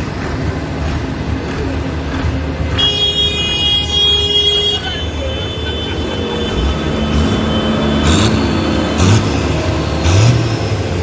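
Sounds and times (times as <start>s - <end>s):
tractor engines running: 0.0s - 11.0s.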